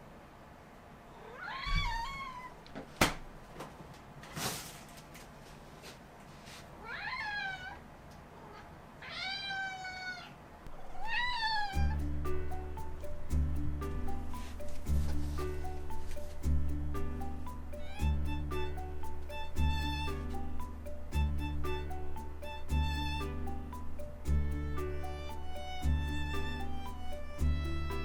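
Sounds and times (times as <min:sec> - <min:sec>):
cat meowing: 0:01.2 - 0:02.6, 0:06.8 - 0:07.8, 0:08.4 - 0:12.0, 0:17.8 - 0:18.2
short rustle: 0:02.8 - 0:06.8, 0:14.2 - 0:16.5.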